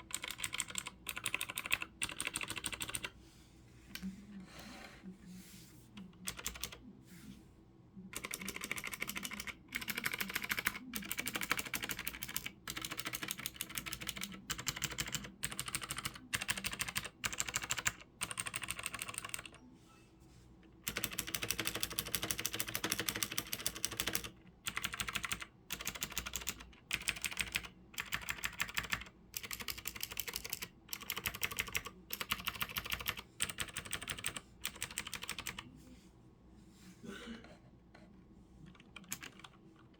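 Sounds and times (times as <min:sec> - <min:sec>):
mechanical keyboard typing: 0:00.0 - 0:03.1, 0:06.2 - 0:06.8, 0:08.1 - 0:19.6, 0:20.8 - 0:35.6, 0:38.7 - 0:39.9.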